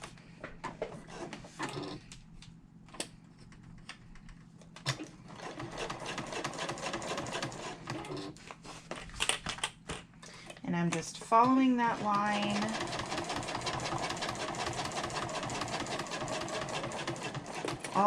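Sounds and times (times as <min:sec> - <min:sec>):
sewing machine stitching: 0:01.1 - 0:02.0, 0:04.9 - 0:08.4, 0:11.4 - 0:18.0.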